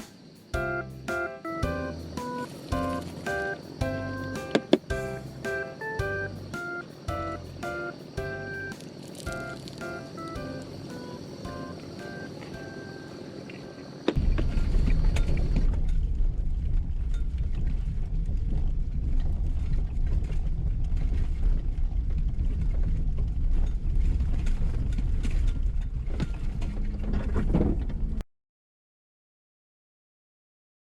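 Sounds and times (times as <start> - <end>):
vehicle rumbling over rough road: 0.6 - 28.2
rattles and knocks: 14.1 - 28.2.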